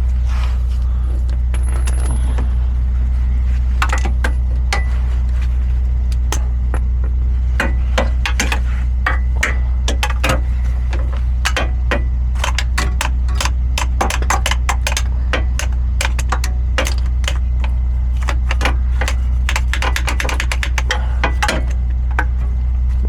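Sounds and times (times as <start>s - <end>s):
steady low hum: 0.0s - 23.0s
hand tools tapping on metal: 3.8s - 5.5s, 6.1s - 22.6s.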